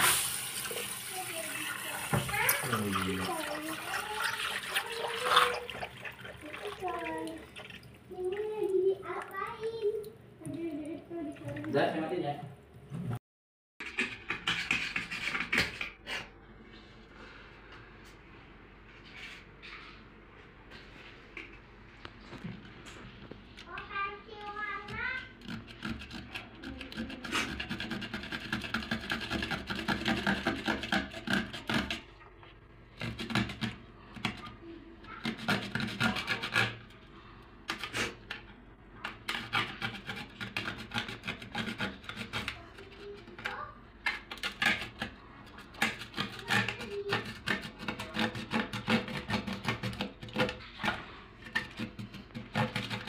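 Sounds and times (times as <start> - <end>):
hand tool scraping: 13.8 - 15.9, 24.9 - 32.0, 35.1 - 37.0, 39.2 - 43.6, 44.3 - 53.0.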